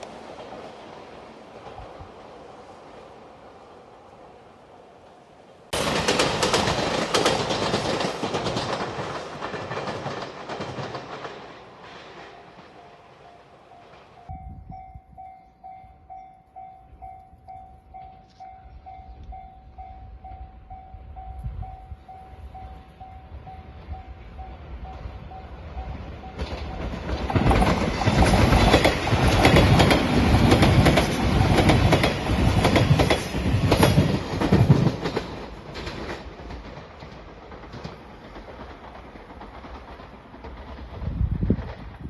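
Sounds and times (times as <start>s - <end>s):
low train rumble: 0.0s - 42.0s
train cars rushing and clattering: 0.0s - 42.0s
level crossing warning bell: 12.3s - 27.2s.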